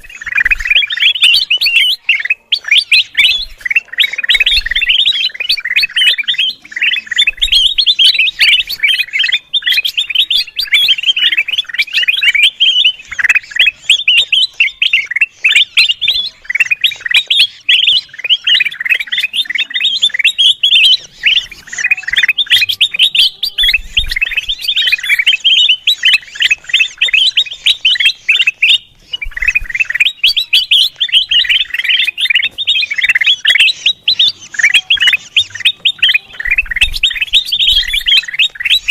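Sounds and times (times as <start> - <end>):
bird chattering and trilling: 0.0 - 38.9.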